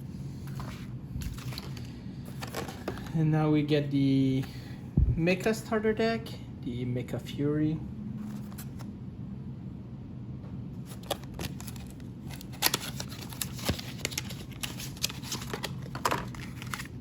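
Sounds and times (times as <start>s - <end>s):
steady low hum: 0.0s - 17.0s
cardboard packaging clicks and rustles: 0.5s - 3.1s, 10.8s - 17.0s.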